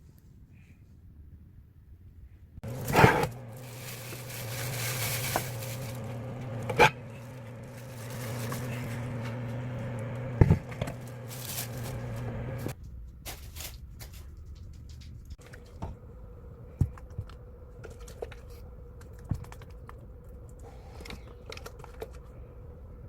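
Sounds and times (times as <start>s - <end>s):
kitchen appliance motor churning: 2.6s - 12.8s.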